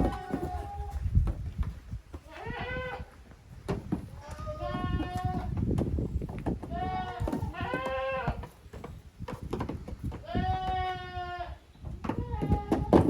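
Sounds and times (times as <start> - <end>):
goat kids bleating: 0.0 - 1.0, 2.2 - 3.2, 4.1 - 5.6, 6.6 - 8.6, 10.1 - 13.0
knocks and thuds: 5.5 - 10.2.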